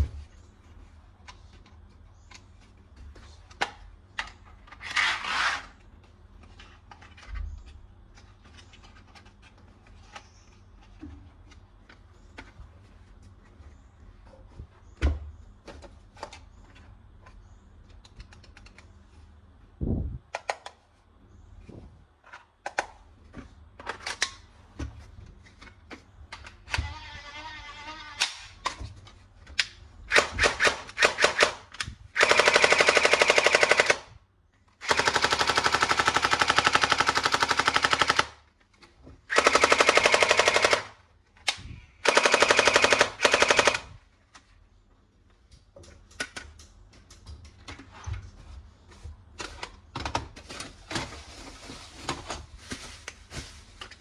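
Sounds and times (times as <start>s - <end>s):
toy machine gun electronic gunfire: 30.1s - 31.6s, 32.2s - 34.1s, 39.3s - 40.9s, 42.0s - 43.9s.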